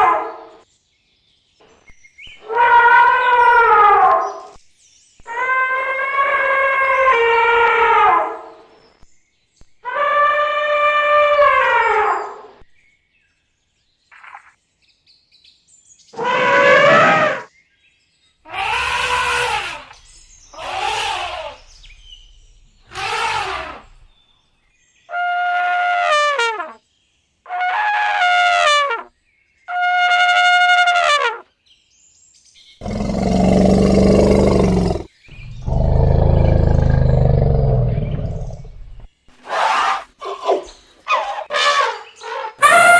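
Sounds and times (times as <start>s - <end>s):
elephant rough roaring calls: 16.2s - 17.5s, 18.5s - 24.1s, 32.8s - 39.1s, 42.6s - 42.9s
elephants trumpeting: 16.2s - 17.5s, 18.5s - 24.1s, 32.8s - 40.0s, 41.1s - 42.9s.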